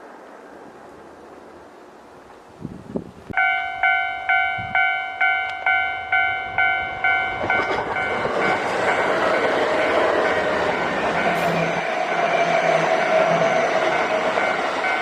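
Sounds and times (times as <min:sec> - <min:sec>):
approaching train: 0:00.0 - 0:15.0
level crossing warning bell: 0:03.4 - 0:15.0.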